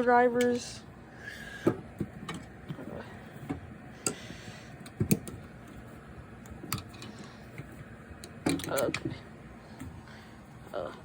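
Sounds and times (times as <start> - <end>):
hand tools clicking and knocking: 4.8 - 5.4, 6.7 - 9.2.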